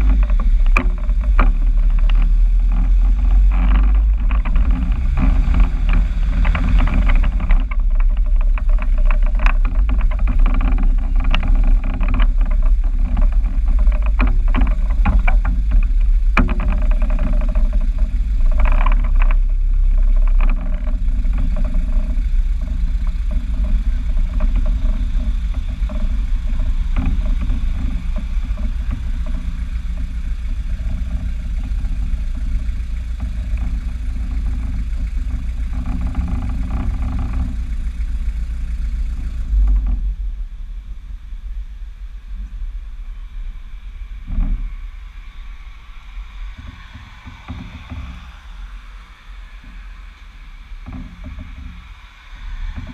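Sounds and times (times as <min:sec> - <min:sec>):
car engine rumbling: 0:00.0 - 0:52.9.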